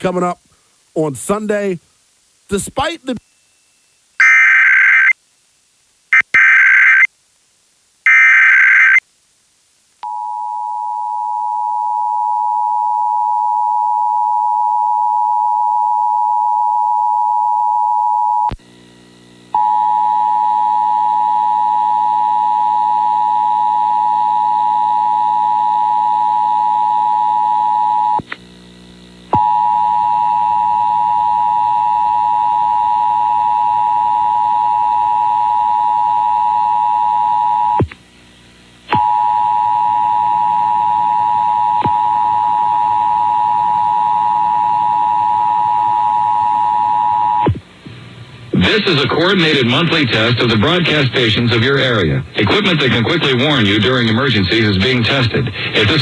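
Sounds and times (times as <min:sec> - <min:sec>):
raspy data bursts: 0:04.2 - 0:05.1, 0:06.1 - 0:07.1, 0:08.1 - 0:09.0.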